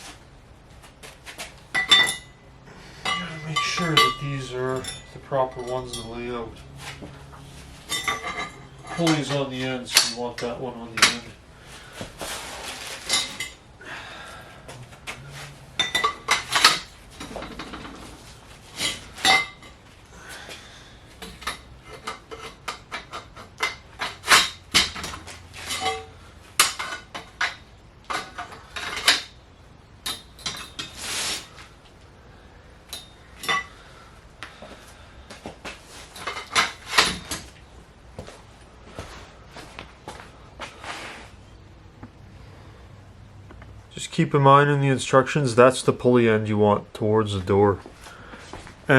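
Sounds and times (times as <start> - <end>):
steel rails clanking: 3.0 - 11.4, 15.0 - 19.8
handling rustle: 11.7 - 13.6.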